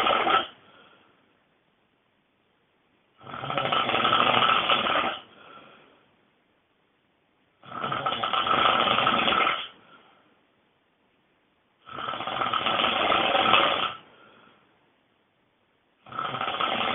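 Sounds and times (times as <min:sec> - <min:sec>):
person snoring loudly: 0:00.0 - 0:00.6, 0:03.2 - 0:05.6, 0:07.6 - 0:09.8, 0:11.8 - 0:14.0, 0:16.0 - 0:16.9
faint short breath: 0:00.6 - 0:01.3.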